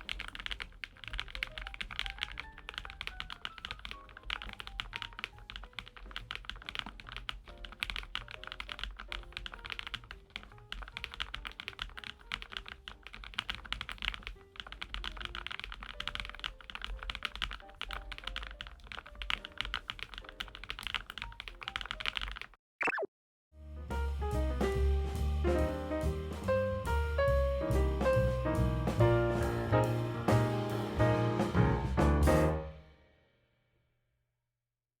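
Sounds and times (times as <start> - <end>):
mechanical keyboard typing: 0.0 - 22.6
soft background music: 0.1 - 22.3, 23.6 - 32.6.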